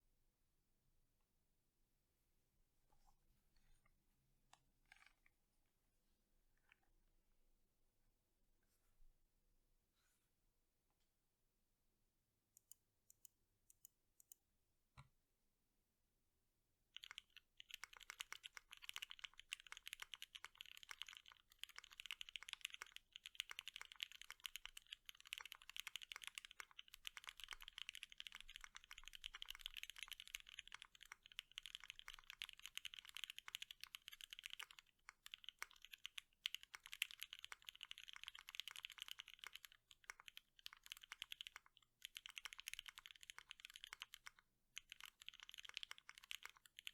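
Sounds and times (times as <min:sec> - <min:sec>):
mechanical keyboard typing: 0:17.0 - 0:46.9.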